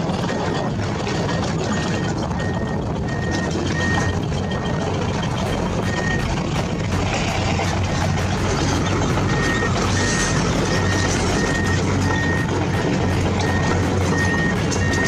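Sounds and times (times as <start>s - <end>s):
steady low hum: 0.0s - 15.0s
toy truck reversing beeper: 0.2s - 6.3s, 9.2s - 15.0s.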